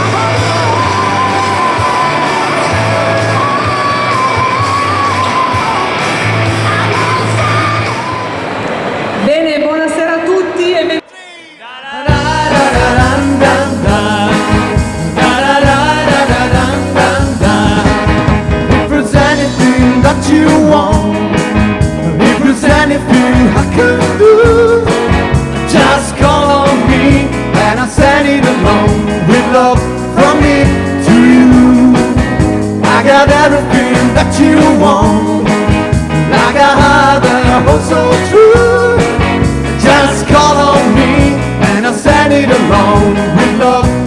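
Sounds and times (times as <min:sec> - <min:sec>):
live rock band playing: 0:00.0 - 0:09.2, 0:12.0 - 0:44.0
person singing: 0:11.0 - 0:25.0, 0:25.6 - 0:35.6, 0:36.3 - 0:44.0.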